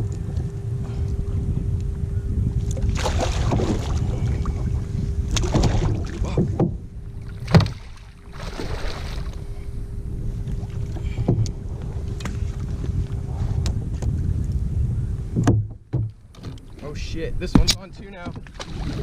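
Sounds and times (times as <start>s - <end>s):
water lapping at hull: 0.0s - 14.6s, 15.3s - 19.0s
faint steady hum: 0.0s - 19.0s
wind buffeting microphone: 0.0s - 19.0s
sharp knocks: 15.4s - 16.6s.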